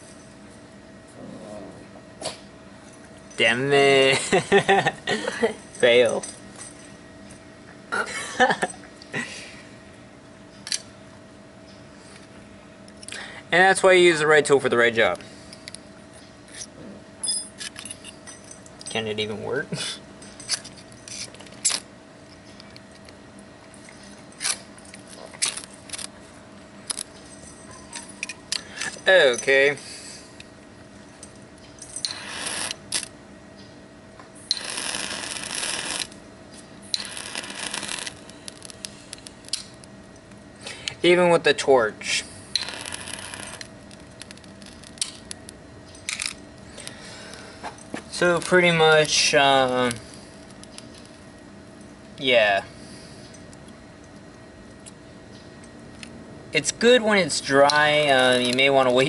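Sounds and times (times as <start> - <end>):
faint steady hum: 0.0 - 59.0
torch lighter hissing: 34.5 - 36.1, 36.9 - 39.3.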